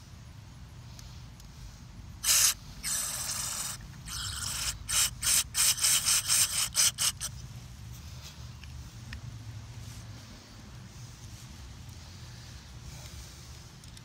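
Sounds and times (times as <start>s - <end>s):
air nozzle hissing blasts: 2.2s - 7.3s.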